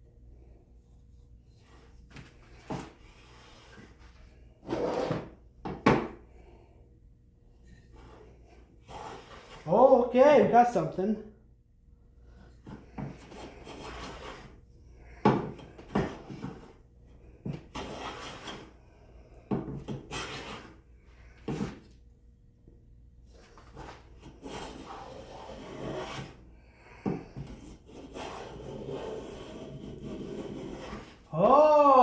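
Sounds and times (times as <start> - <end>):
plane scraping along wooden board: 2.6 - 5.4, 12.8 - 14.6, 17.5 - 18.7, 19.9 - 20.8, 23.6 - 26.4, 27.4 - 31.3.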